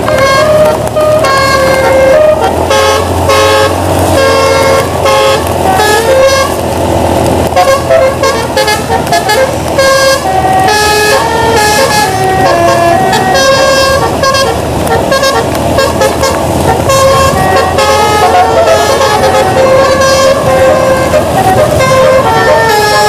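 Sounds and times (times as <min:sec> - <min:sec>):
bus engine running low: 0:00.0 - 0:23.0
musical bus air horn: 0:00.0 - 0:23.0.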